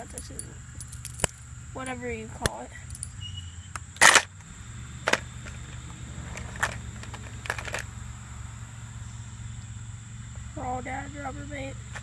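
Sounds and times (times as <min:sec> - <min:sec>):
steady low hum: 0:00.0 - 0:12.0
fishing tackle clicks and rustles: 0:05.0 - 0:07.9.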